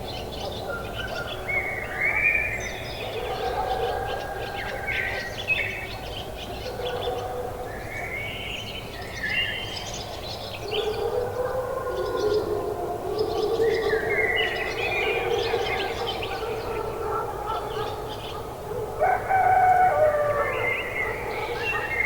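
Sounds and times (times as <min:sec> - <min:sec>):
birds chirping and singing: 0:19.0 - 0:22.0.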